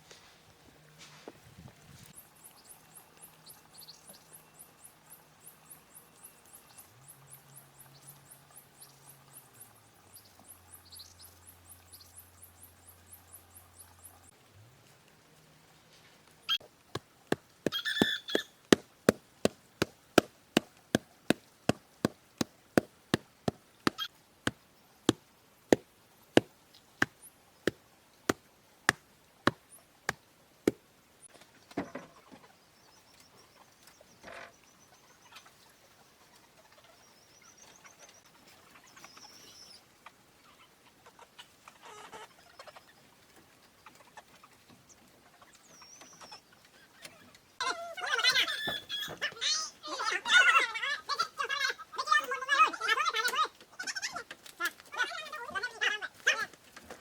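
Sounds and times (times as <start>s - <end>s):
hand tool strikes: 17.0s - 24.0s
small birds calling: 17.6s - 19.9s.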